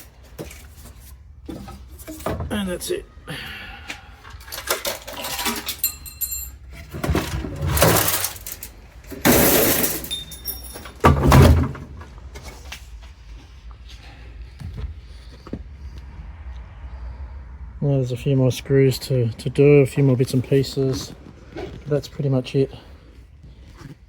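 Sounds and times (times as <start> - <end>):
metal parts clattering and scraping: 4.2 - 12.7
high metallic rings: 5.5 - 6.7, 9.3 - 11.1.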